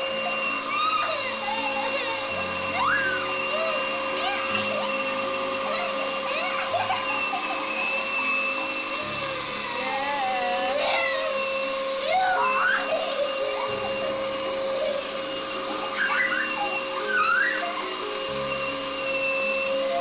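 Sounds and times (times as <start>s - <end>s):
vacuum cleaner whining: 0.0s - 20.0s
short high-pitched squeals: 10.8s - 20.0s.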